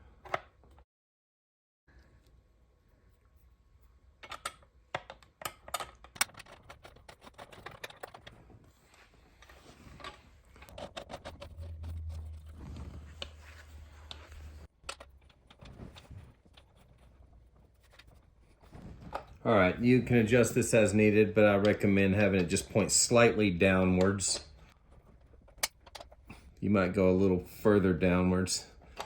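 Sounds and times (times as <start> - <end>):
metal hardware clicking and rattling: 4.2 - 8.4
faint low hum: 6.4 - 29.0.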